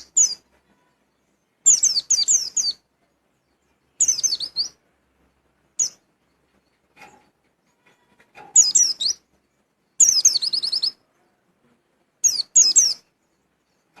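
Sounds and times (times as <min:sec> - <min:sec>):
bird singing high falling chirps: 0:01.7 - 0:02.8, 0:04.0 - 0:04.8, 0:08.6 - 0:09.2, 0:10.0 - 0:11.0.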